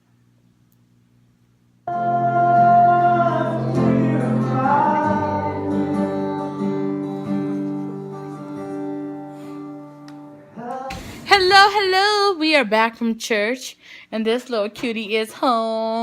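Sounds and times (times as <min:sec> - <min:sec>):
person singing: 0:01.9 - 0:09.6, 0:10.4 - 0:12.1
plucked guitar: 0:01.9 - 0:11.8.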